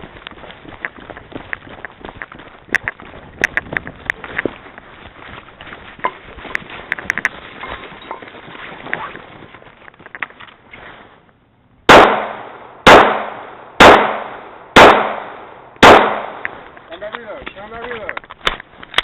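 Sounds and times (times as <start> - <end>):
handgun shots echoing: 11.9 - 16.6.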